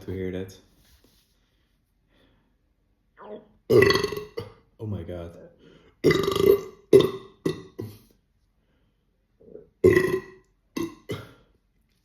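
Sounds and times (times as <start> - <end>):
man burping: 3.7 - 4.6, 6.0 - 8.1, 9.4 - 11.5.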